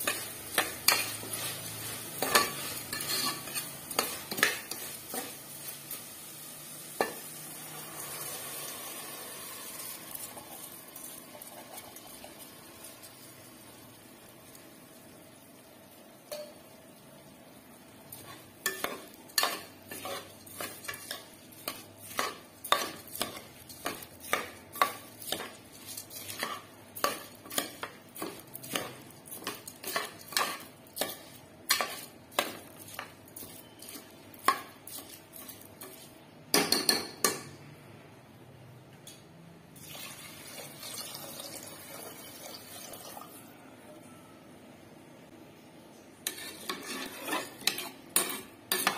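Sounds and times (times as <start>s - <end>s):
metal spoon stirring in pot: 0.0s - 5.4s, 18.1s - 37.4s, 46.2s - 48.9s.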